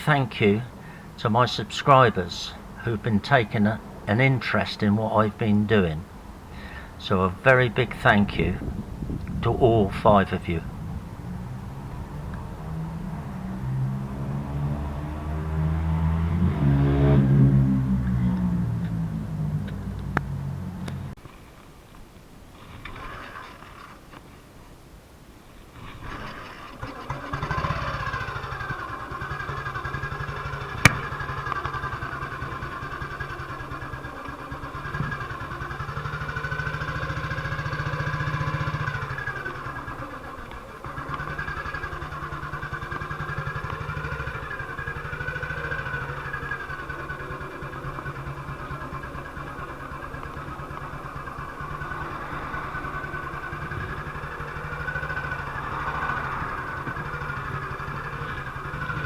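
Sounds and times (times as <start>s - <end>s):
motorcycle engine running: 7.8s - 21.2s, 25.9s - 59.0s
sharp click: 30.9s - 31.1s.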